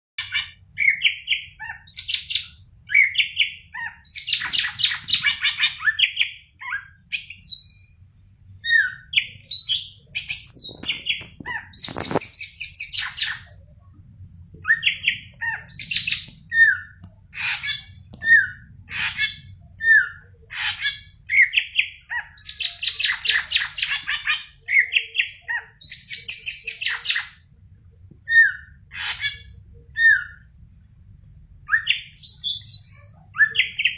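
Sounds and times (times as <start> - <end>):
bird singing chirps and whistles: 8.6 - 13.6, 14.6 - 27.4, 28.3 - 29.4, 30.0 - 30.4, 31.7 - 33.9.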